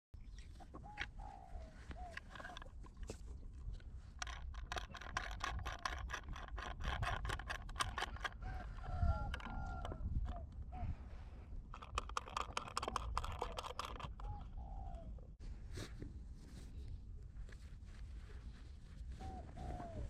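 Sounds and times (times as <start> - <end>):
rapid clicks and crackles: 3.8 - 8.4, 11.7 - 14.4.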